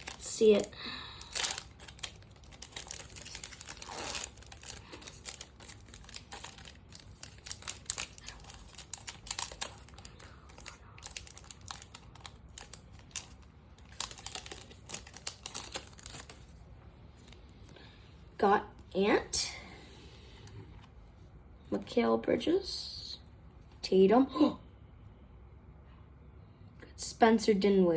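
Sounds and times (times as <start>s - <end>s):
cards clicking and rustling: 0.0s - 16.6s
foil wrapper crinkling: 0.0s - 16.6s.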